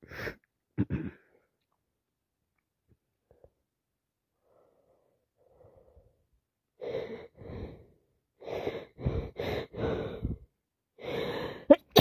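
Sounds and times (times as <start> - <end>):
person breathing: 4.3 - 11.7
quick gasping breaths: 6.8 - 11.7.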